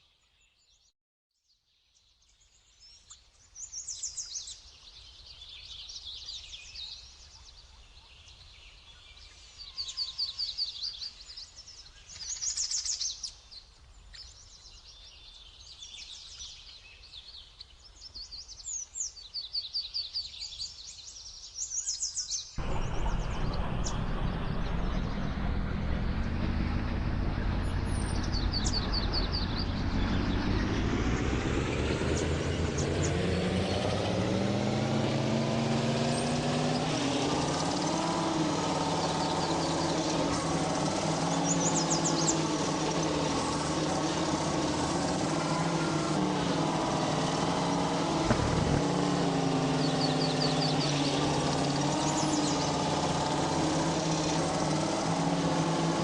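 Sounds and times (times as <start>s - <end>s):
birds chirping: 1.9s - 56.0s
vehicle engine running: 22.6s - 56.0s.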